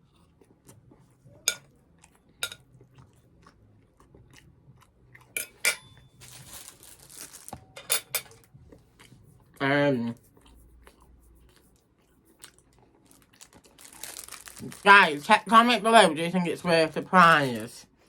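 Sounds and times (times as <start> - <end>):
person chewing: 0.0 - 6.4, 8.4 - 14.9.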